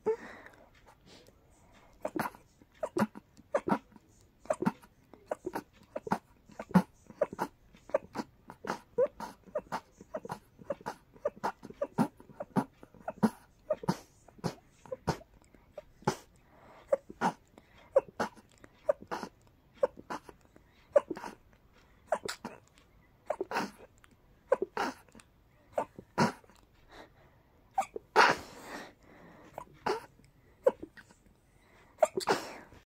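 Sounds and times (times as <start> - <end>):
person sneezing rapidly: 27.8 - 28.6, 32.0 - 32.6.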